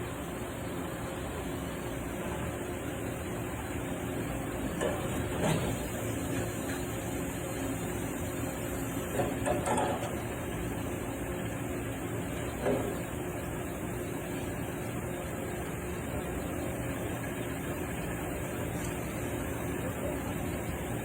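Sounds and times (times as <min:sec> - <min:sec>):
machinery humming: 0:00.0 - 0:21.0.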